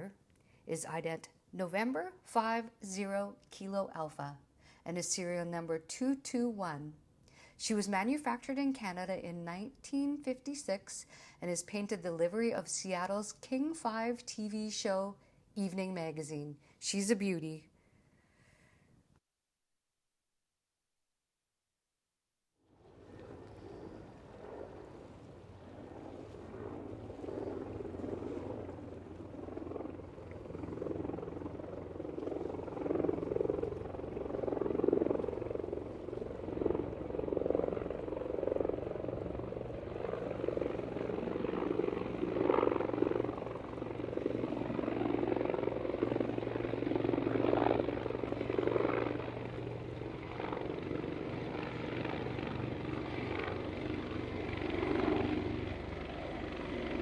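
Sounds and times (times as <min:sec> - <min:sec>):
propeller engine drone: 0:22.7 - 0:57.0.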